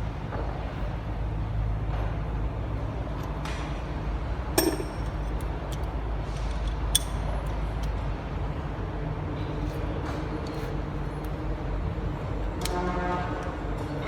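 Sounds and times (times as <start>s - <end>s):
sharp metallic clinks: 4.6s - 5.3s.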